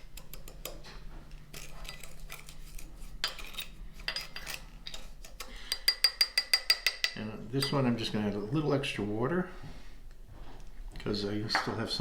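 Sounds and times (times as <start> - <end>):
spoon scraping in a ramekin: 1.4 - 8.4.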